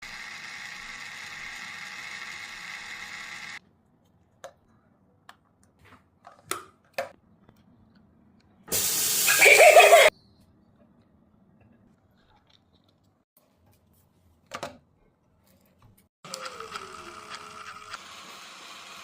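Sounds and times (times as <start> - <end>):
small motor whirring: 0.0 - 3.6, 16.2 - 19.0.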